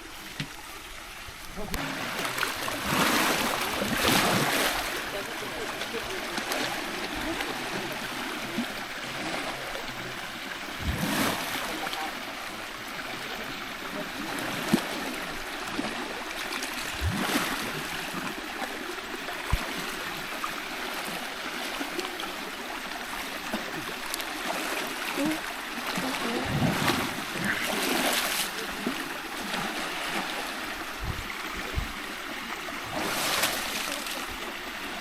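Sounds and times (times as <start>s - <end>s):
flowing water rushing: 0.0s - 35.0s
short knocks and splashes: 1.6s - 7.6s, 10.8s - 12.1s, 16.8s - 17.8s, 24.4s - 30.3s.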